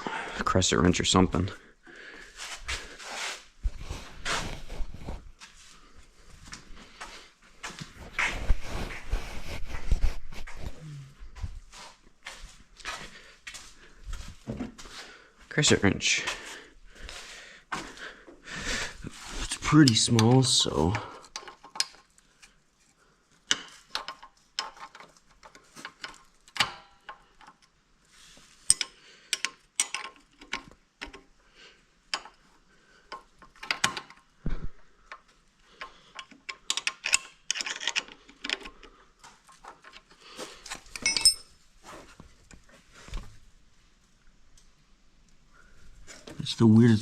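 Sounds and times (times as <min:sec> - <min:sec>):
wrench clicking on bolt: 0:28.7 - 0:31.2.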